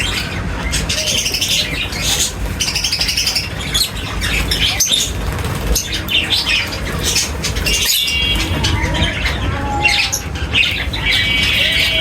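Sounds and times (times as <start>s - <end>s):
small birds chirping: 0.0s - 12.0s
whistled bird notes: 5.8s - 12.0s.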